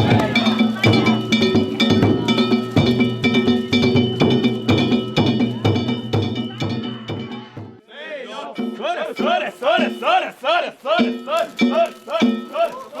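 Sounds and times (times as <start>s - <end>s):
drums beating: 0.0s - 7.8s
gongs clanging: 0.0s - 7.8s.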